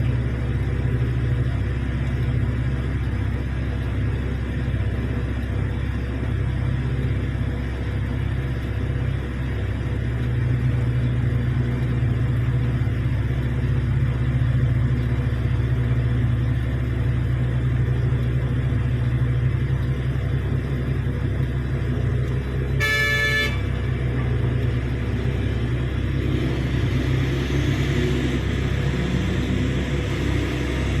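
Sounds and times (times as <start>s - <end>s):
heavy diesel machinery drone: 0.0s - 31.0s
short horn blast: 22.8s - 23.9s.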